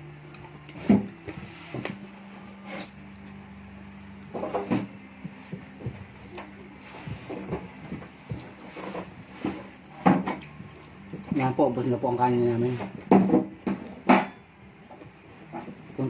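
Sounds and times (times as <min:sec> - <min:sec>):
steady low hum: 0:00.0 - 0:16.0
knocks and clicks of handling food: 0:07.2 - 0:11.2, 0:12.8 - 0:15.8.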